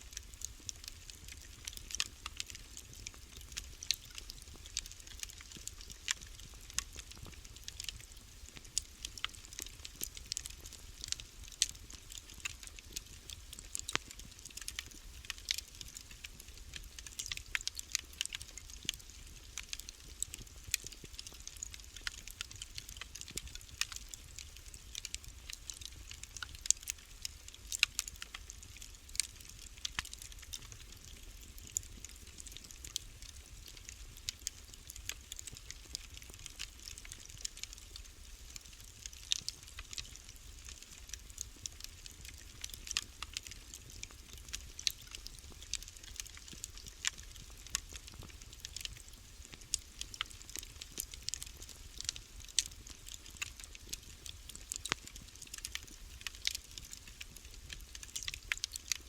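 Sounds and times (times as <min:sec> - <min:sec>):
fire pops and snaps: 0:00.1 - 0:59.0
wood fire crackling: 0:00.1 - 0:59.0.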